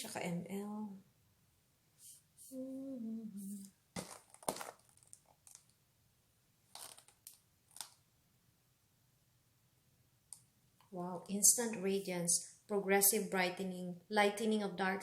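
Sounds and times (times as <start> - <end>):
person murmuring: 2.5 - 3.7
package rustling and tapping: 4.0 - 5.8, 6.7 - 8.0.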